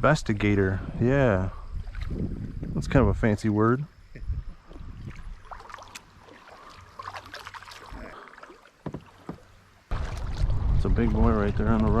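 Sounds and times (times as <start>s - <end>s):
water lapping around a hull: 1.5s - 3.0s, 4.0s - 12.0s
light knocks against a kayak: 8.8s - 9.5s.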